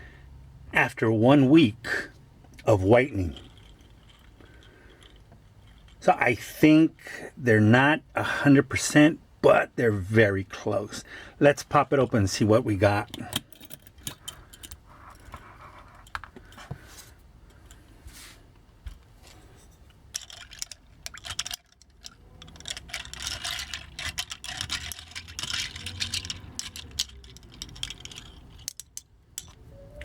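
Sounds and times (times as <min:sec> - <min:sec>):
plastic toy parts rattling: 0:03.1 - 0:06.1, 0:19.9 - 0:29.7.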